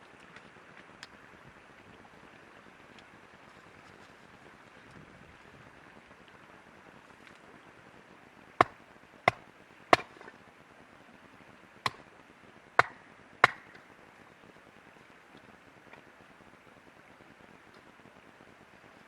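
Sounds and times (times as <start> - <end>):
axe chopping wood: 8.6 - 9.4, 10.0 - 10.3, 12.8 - 13.8.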